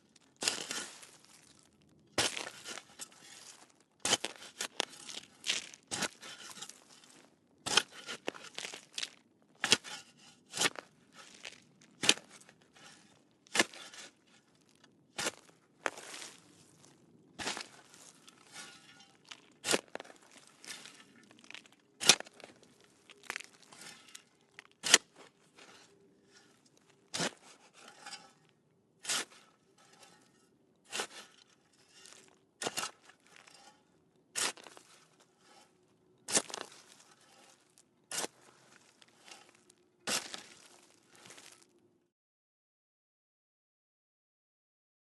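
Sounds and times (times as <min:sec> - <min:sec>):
shovel digging in dirt: 0:00.4 - 0:01.6, 0:02.2 - 0:14.5, 0:15.2 - 0:41.6.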